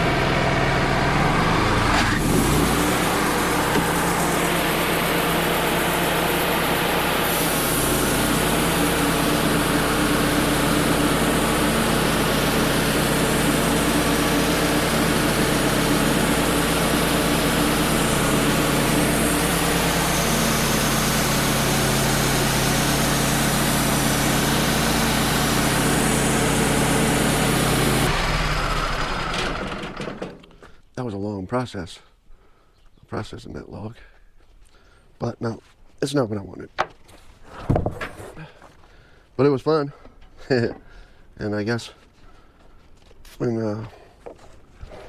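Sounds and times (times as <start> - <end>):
sawmill engine running: 0.0 - 30.8.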